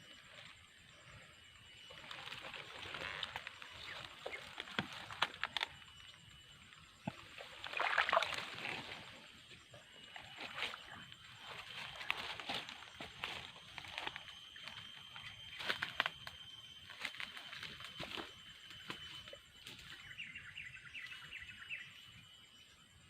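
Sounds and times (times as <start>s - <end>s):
water splashing and sloshing: 6.7s - 14.1s.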